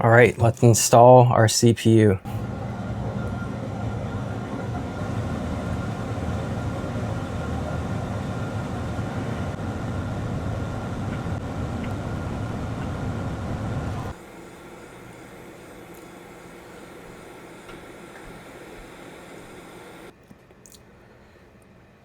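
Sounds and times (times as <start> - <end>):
hot air station blowing: 2.2 - 20.1
steady hiss: 5.0 - 20.1.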